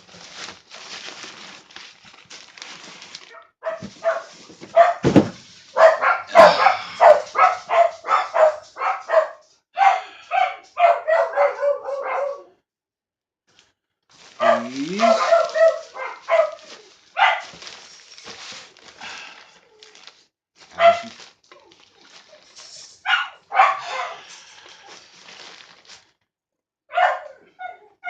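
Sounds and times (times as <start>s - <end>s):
dog barking: 3.3s - 5.1s, 5.7s - 12.6s, 14.4s - 17.6s, 20.7s - 21.2s, 23.0s - 24.3s, 26.9s - 28.0s.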